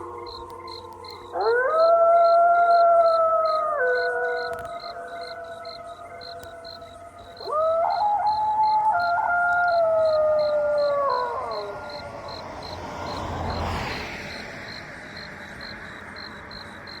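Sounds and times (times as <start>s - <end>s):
animal howling: 1.1s - 13.6s.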